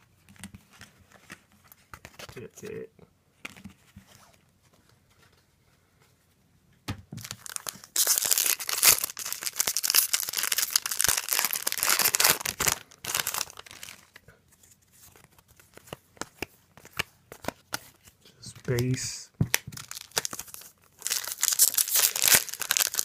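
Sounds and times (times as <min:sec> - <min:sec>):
wrapper tearing and crinkling: 0:07.2 - 0:14.2, 0:19.8 - 0:23.0.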